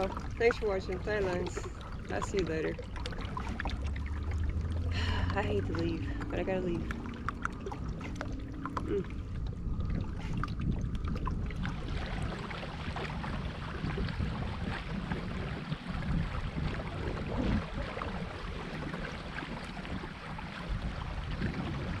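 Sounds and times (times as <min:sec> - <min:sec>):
water rushing: 0:00.0 - 0:22.0
wind buffeting the microphone: 0:00.0 - 0:22.0.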